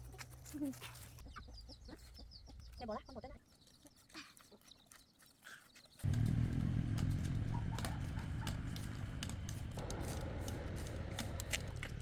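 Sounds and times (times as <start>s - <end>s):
motor vehicle rumble: 6.0s - 12.0s.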